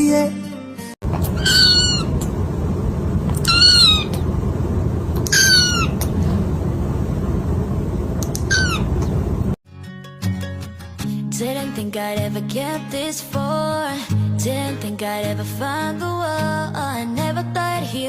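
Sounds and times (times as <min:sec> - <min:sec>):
low rumble: 0:01.0 - 0:09.6
kitten meowing: 0:01.3 - 0:02.2, 0:03.3 - 0:04.2, 0:05.2 - 0:06.0.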